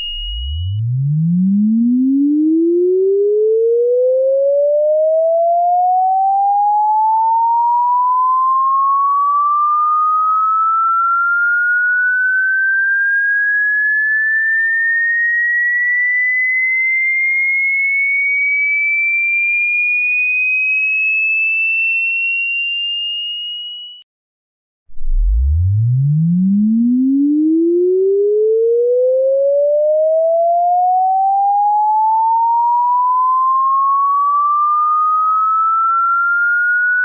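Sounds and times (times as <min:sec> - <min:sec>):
electronic tone rising in pitch: 0:00.0 - 0:08.1, 0:24.9 - 0:37.0.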